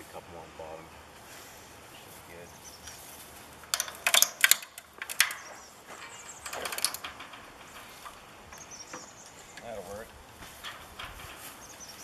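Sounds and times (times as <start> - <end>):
cable rasping under tension: 2.9 - 12.0
ratchet winch pawl clicking: 3.7 - 8.6.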